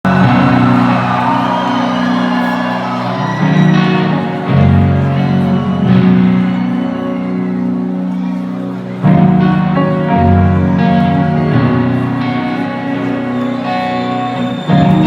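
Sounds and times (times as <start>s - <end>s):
crowd shouting and whooping: 0.0s - 8.4s, 9.4s - 15.0s
live band playing slow chords: 0.1s - 15.0s.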